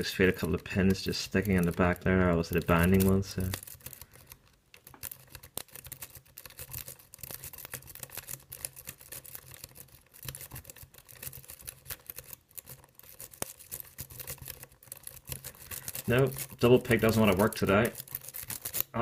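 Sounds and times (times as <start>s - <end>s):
lock pick clicking and scraping: 2.5s - 16.6s.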